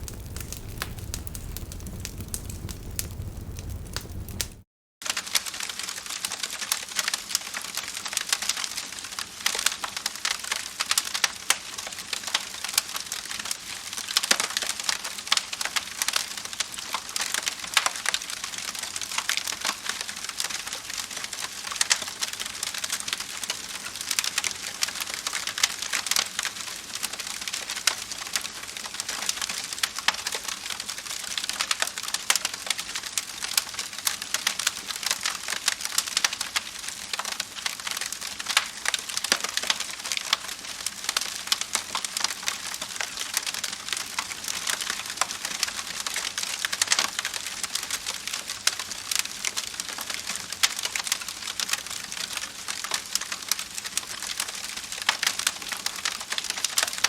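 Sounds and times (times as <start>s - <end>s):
burning wood snapping: 0.0s - 4.6s
wood fire crackling: 0.0s - 4.7s, 21.2s - 57.0s.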